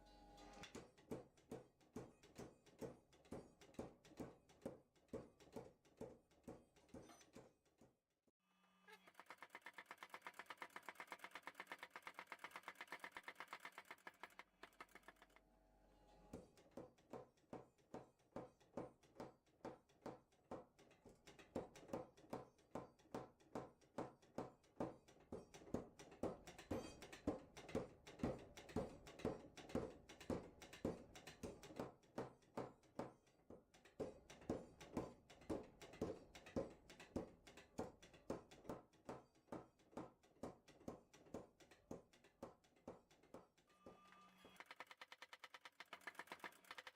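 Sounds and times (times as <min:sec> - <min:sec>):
hammer striking chisel on anvil: 0:26.2 - 0:33.2.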